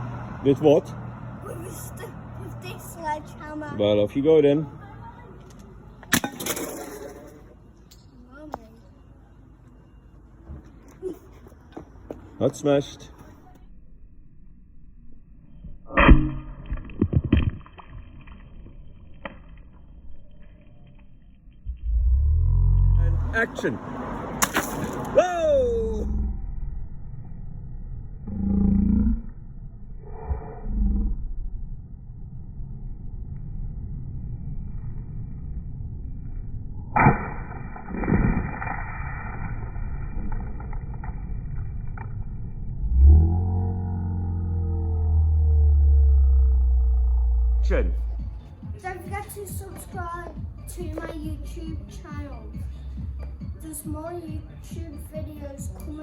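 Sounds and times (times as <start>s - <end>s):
low musical hum: 40.1s - 56.0s.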